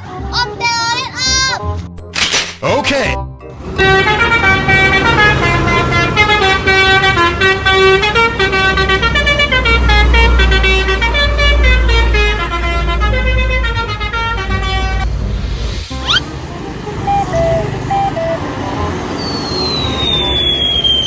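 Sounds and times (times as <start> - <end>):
bus horn playing a tune: 3.6 - 15.4, 16.2 - 19.8.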